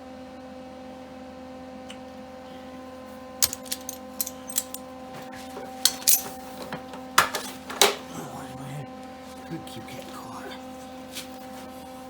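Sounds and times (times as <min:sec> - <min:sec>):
electrical hum: 0:00.1 - 0:12.0
metallic clinks and clicks: 0:03.4 - 0:04.8, 0:05.8 - 0:06.4.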